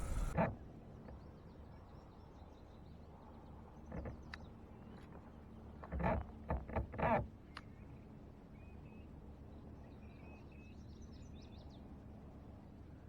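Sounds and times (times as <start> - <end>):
faint birds chirping: 0.0 - 0.4.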